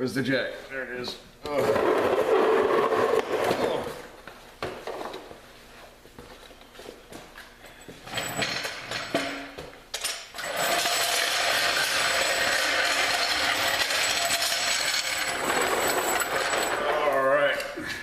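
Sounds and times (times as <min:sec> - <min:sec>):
metal tools clanking: 0:08.1 - 0:17.3.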